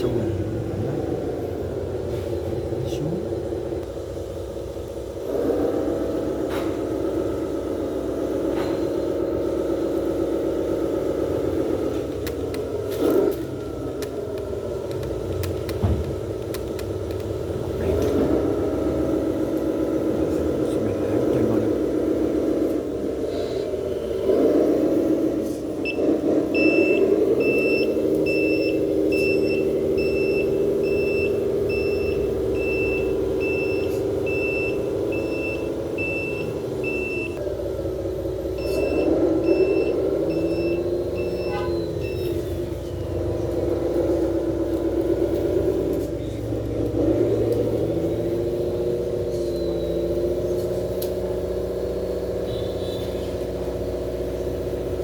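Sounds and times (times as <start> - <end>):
simulated truck engine: 0.0 - 55.0
reversing beeper: 25.4 - 37.4, 38.5 - 44.3, 48.0 - 50.6.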